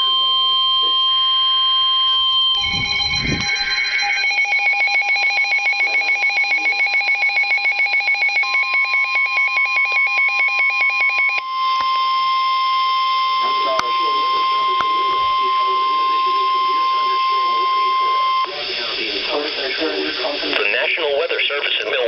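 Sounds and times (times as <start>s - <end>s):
steady high tones: 2.4s - 7.0s
rapidly pulsing electronic tone: 2.5s - 6.9s.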